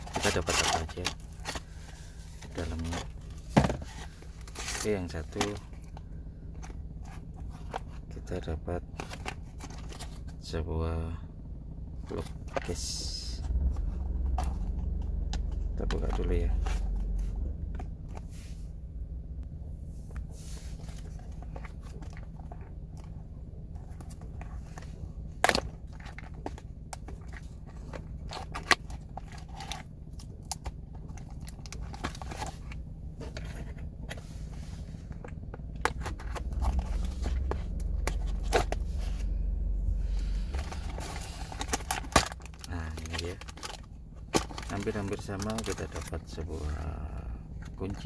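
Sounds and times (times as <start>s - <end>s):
steady low hum: 0.0s - 48.0s
packaging clicks and crinkles: 40.6s - 46.1s.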